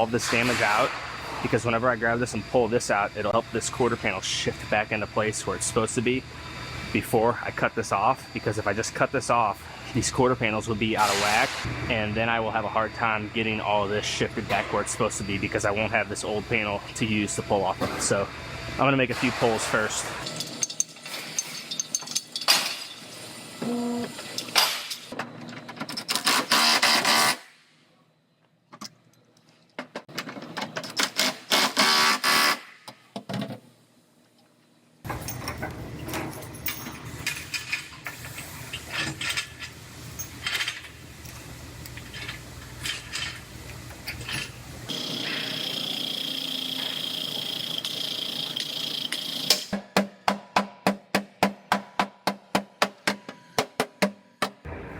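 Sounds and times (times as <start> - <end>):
steady high whine: 0.0 - 20.4
chains and clamps clanking: 19.4 - 23.2, 35.1 - 38.0
machine noise bursts: 26.2 - 27.5, 31.3 - 32.7, 44.9 - 49.7.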